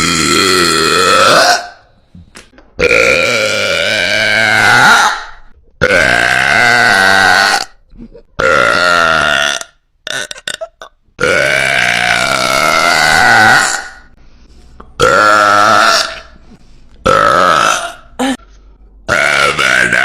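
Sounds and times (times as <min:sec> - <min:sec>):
woman burping loudly: 0:00.0 - 0:01.8, 0:02.8 - 0:14.1, 0:15.0 - 0:16.3, 0:17.0 - 0:18.4.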